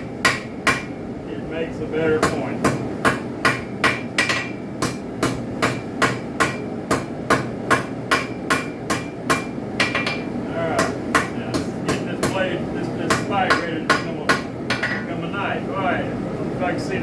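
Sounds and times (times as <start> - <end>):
hammer striking metal on anvil: 0.2 - 1.0, 2.2 - 12.4, 13.1 - 15.1.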